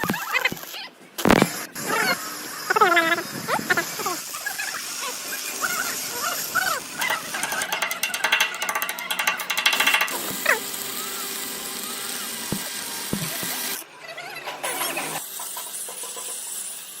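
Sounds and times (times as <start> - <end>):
power tool working metal: 1.3 - 17.0
short squeaks and knocks: 5.6 - 15.2.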